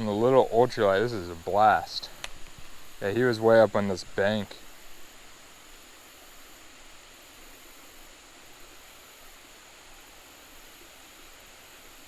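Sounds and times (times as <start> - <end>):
faint outdoor hiss: 0.0 - 12.0.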